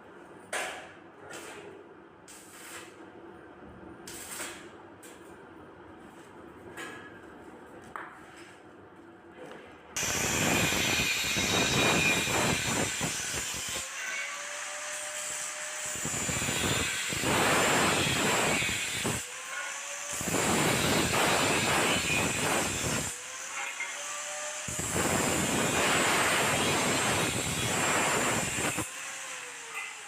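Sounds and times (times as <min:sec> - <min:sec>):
arc welding crackling: 0:04.0 - 0:04.6, 0:10.0 - 0:13.8.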